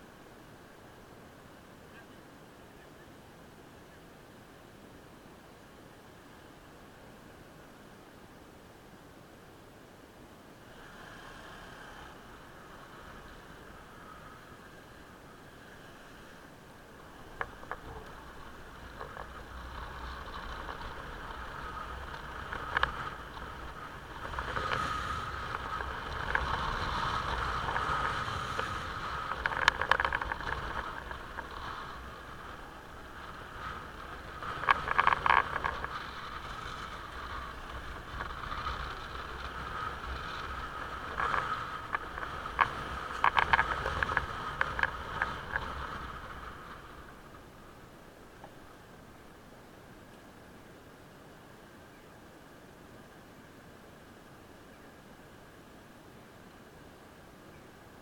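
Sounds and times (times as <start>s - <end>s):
mid-range hiss: 0.0s - 58.0s
motorcycle engine and road rumble: 0.0s - 58.0s
sharp clicks and crackles: 17.1s - 47.4s.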